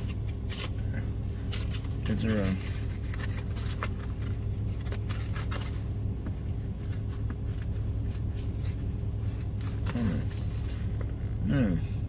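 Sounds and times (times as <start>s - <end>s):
cards clicking and rustling: 0.0s - 8.3s
low car engine hum: 0.0s - 12.0s.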